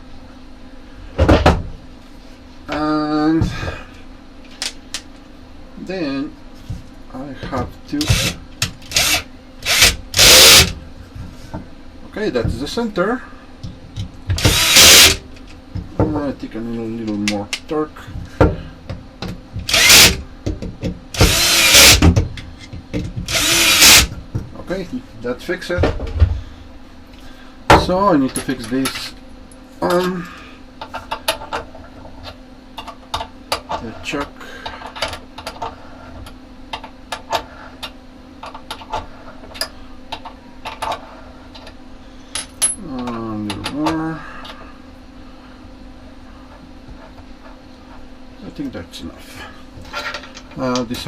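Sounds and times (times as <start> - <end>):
faint steady hum: 0.0 - 51.0
power drill driving screw into wood: 8.0 - 10.8, 14.4 - 15.2, 19.7 - 20.2, 21.2 - 22.2, 23.3 - 24.1.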